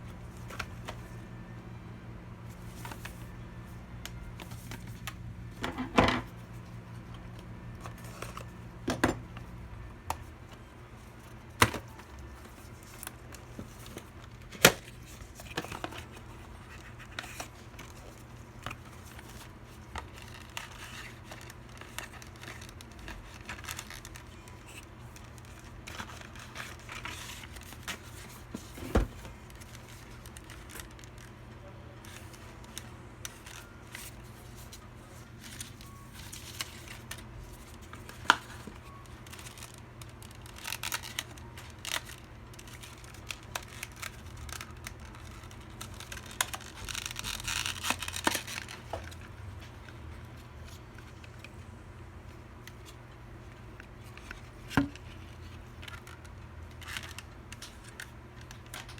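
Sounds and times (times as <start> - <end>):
plastic packaging rustling: 10.2 - 51.6.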